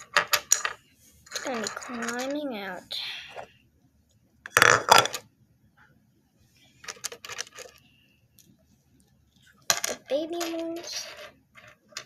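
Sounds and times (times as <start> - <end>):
plastic pieces clicking and clattering: 0.0 - 2.4, 4.5 - 5.2, 6.8 - 7.8, 9.4 - 12.0.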